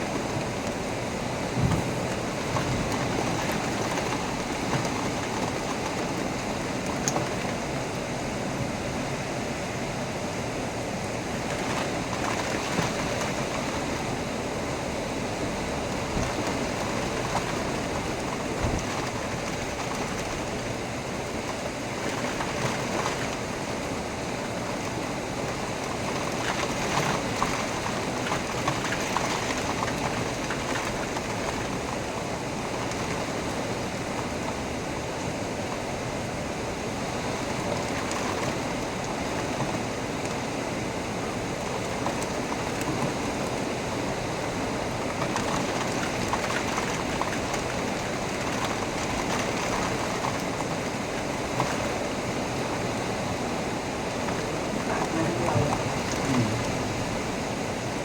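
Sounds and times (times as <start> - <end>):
heavy rain falling: 0.0 - 9.1, 41.1 - 58.0
water drips and splashes: 11.4 - 58.0.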